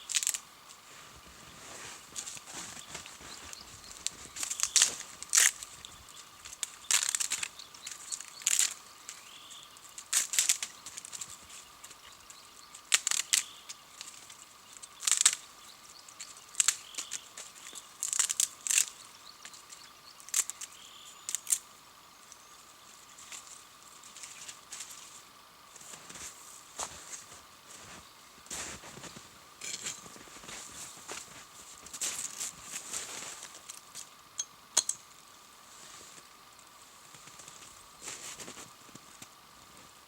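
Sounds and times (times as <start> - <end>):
footsteps crunching in frozen snow: 0.1 - 12.0, 23.1 - 33.8, 36.9 - 39.1.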